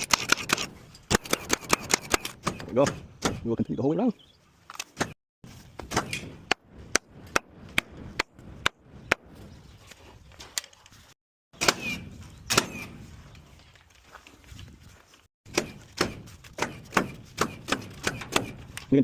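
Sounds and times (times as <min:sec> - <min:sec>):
nail gun firing: 0:00.0 - 0:03.4, 0:15.5 - 0:18.6.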